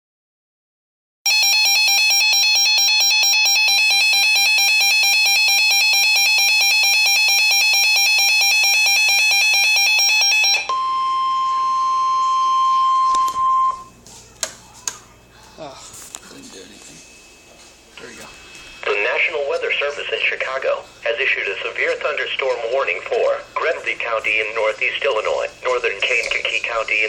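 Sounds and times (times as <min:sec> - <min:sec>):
steady pure alarm tone: 0:01.3 - 0:13.9
warbling electronic alarm: 0:01.3 - 0:13.9.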